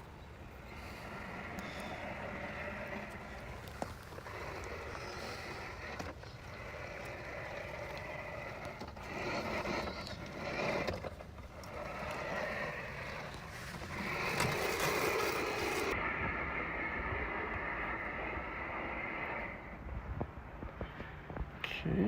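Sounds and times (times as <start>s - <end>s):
robot lawn mower running: 0.0s - 16.0s.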